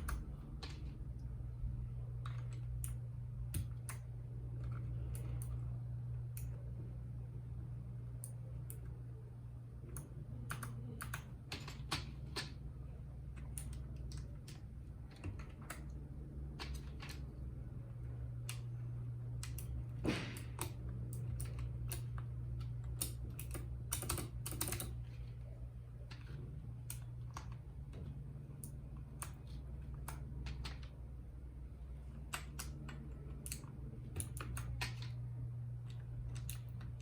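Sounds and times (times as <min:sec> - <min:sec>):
steady low hum: 0:00.0 - 0:37.0
mechanical keyboard key clicks: 0:32.2 - 0:35.2.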